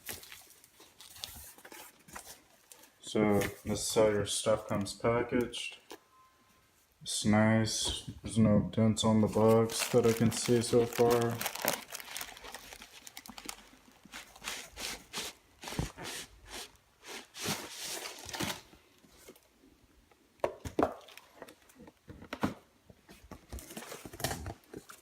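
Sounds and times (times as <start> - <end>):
wrapping crinkling and rustling: 0.0 - 3.8, 9.1 - 19.5.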